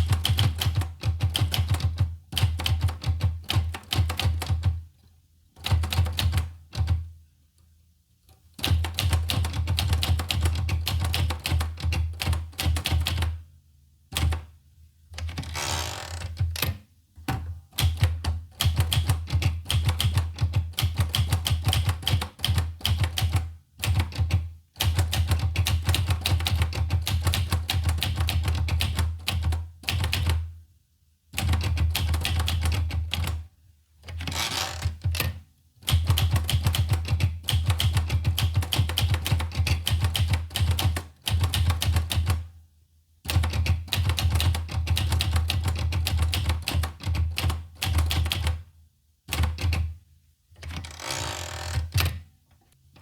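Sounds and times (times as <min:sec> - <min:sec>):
manual typewriter typing: 0:00.0 - 0:04.8, 0:05.6 - 0:07.0, 0:08.6 - 0:13.4, 0:14.2 - 0:14.5, 0:17.8 - 0:30.4, 0:31.4 - 0:33.4, 0:34.0 - 0:42.5, 0:43.3 - 0:48.6, 0:49.3 - 0:49.9.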